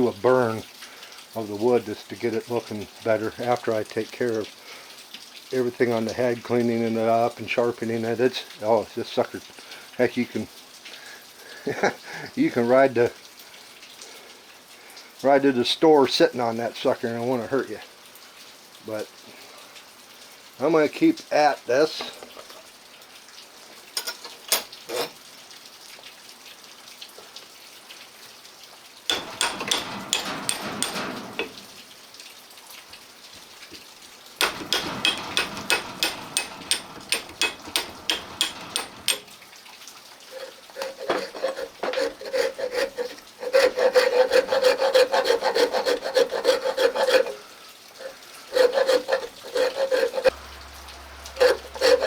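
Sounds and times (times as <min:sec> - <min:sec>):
steady ring: 0:29.1 - 0:31.7, 0:34.4 - 0:39.3
wood file rasping on wood: 0:29.1 - 0:31.7, 0:34.4 - 0:39.3, 0:40.3 - 0:47.4, 0:48.0 - 0:50.4, 0:51.2 - 0:52.0.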